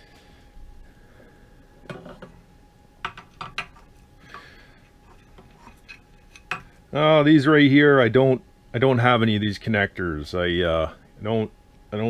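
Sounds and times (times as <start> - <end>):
metal tools clinking: 5.0 - 6.7.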